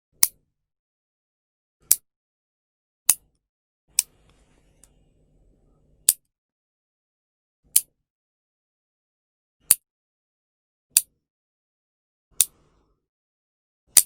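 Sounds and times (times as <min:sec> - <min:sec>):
nail clipper clicking shut: 0:12.4 - 0:12.6.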